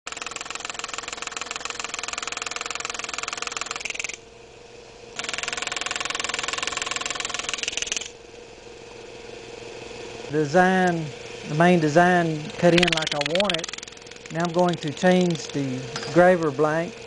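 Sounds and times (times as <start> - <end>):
pneumatic engraver hammering steel: 0.1 - 4.2, 5.2 - 8.2, 11.8 - 16.6
steady hum: 0.1 - 17.0.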